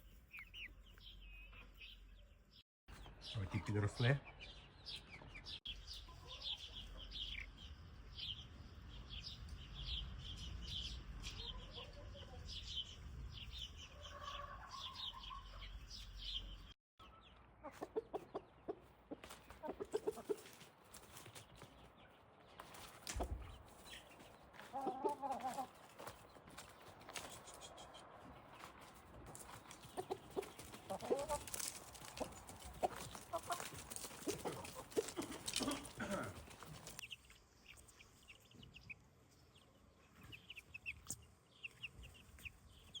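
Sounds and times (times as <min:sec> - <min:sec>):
chicks chirping: 0:00.0 - 0:02.3, 0:02.9 - 0:20.5, 0:21.1 - 0:43.0
hens clucking: 0:17.6 - 0:21.1, 0:22.7 - 0:37.0.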